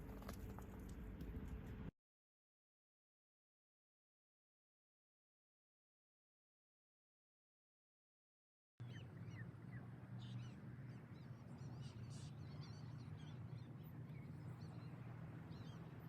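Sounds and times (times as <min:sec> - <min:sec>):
low outdoor rumble: 0:00.0 - 0:01.9
birds chirping: 0:08.8 - 0:16.0.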